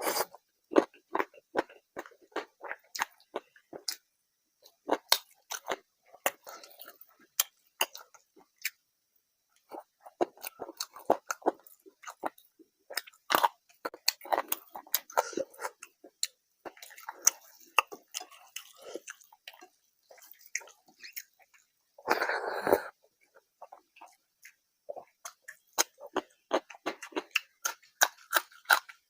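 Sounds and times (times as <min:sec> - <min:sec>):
wet chewing: 0:23.6 - 0:29.0.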